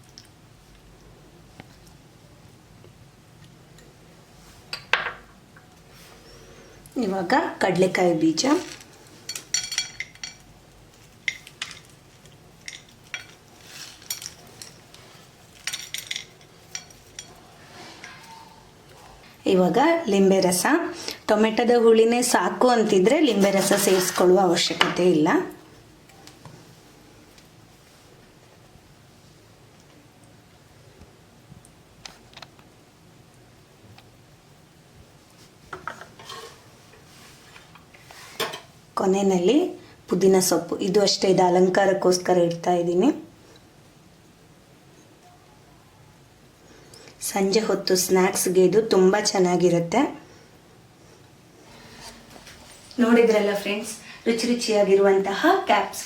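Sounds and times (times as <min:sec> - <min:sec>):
utensils clinking against dishes: 0:09.2 - 0:10.5, 0:12.6 - 0:14.8, 0:15.6 - 0:17.4.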